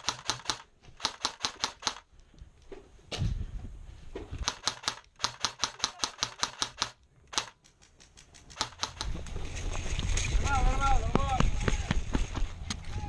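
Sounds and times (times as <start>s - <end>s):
airsoft gun shots: 4.4s - 7.6s, 8.6s - 9.1s.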